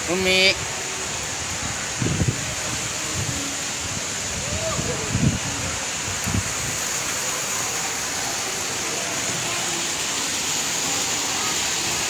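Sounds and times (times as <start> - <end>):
rain falling steadily: 0.0 - 12.0.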